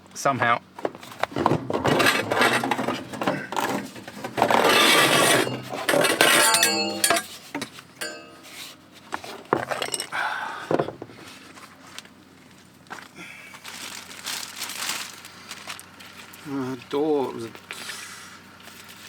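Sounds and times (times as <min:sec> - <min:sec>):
hard objects clinking and rattling: 0:00.8 - 0:11.1.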